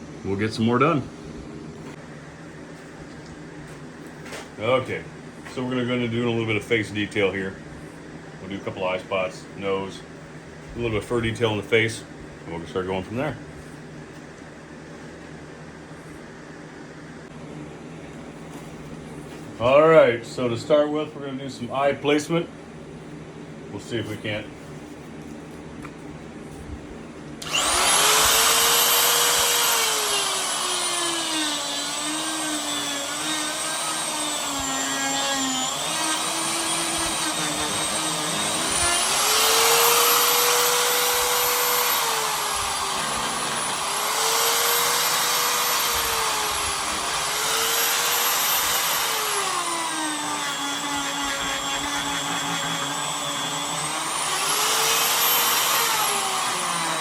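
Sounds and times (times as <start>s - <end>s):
rotary carving tool cutting wood: 27.4s - 57.0s.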